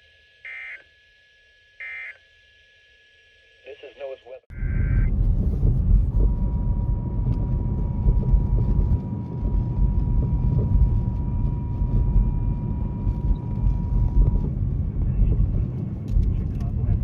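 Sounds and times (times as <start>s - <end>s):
steady warning alarm beep: 0.0s - 5.1s
heavy low rumbling noise: 4.5s - 17.0s.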